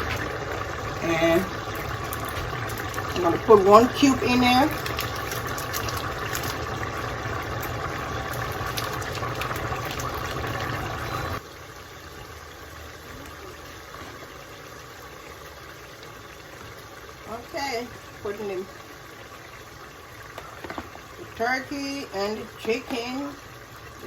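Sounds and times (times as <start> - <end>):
pot boiling and bubbling: 0.0 - 24.0.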